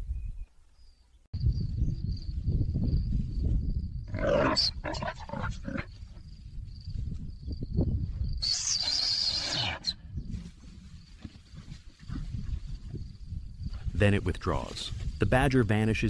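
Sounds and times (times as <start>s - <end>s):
animal snarling: 4.1s - 5.9s
wild animals growling: 4.1s - 5.9s
animal hissing: 8.4s - 10.0s.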